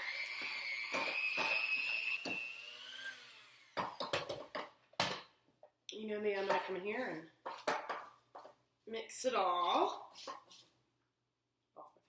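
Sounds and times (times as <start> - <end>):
electric hand mixer whining: 0.0 - 4.4.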